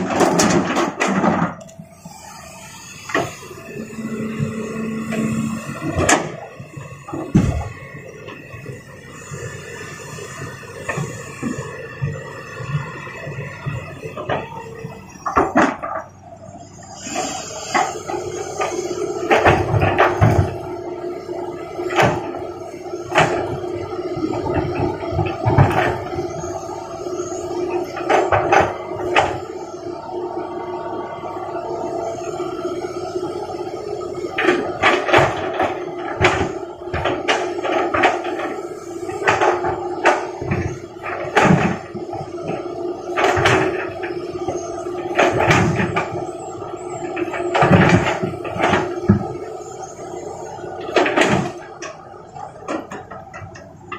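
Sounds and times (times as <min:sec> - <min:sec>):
motor hum: 0:01.6 - 0:07.8.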